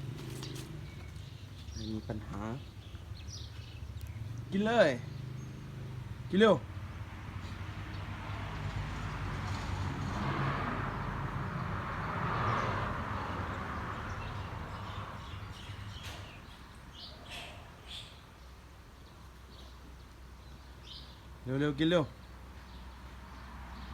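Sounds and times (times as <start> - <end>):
birds chirping: 0.0 - 10.2, 11.3 - 23.9
vehicle hum: 0.0 - 18.1.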